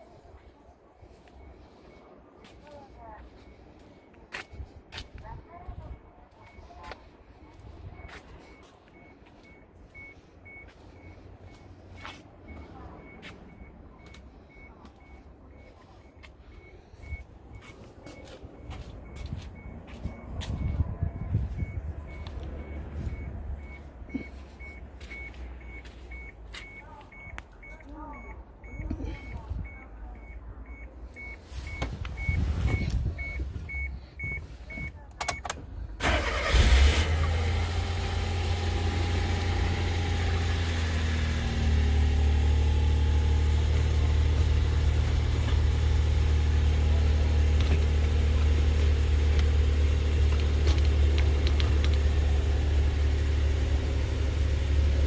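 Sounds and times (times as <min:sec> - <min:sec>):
warning beeps: 0:00.1 - 0:36.6
car engine starting and idling: 0:07.4 - 0:27.4, 0:30.2 - 0:55.0.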